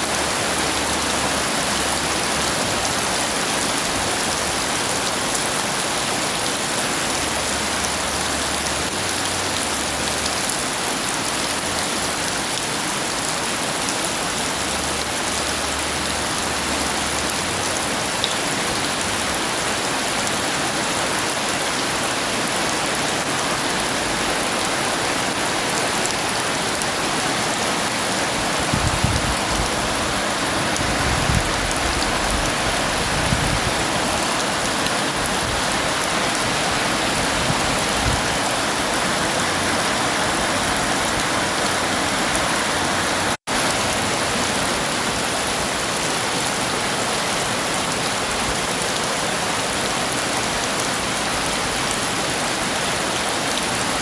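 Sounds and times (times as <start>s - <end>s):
heavy rain: 0.0s - 54.0s.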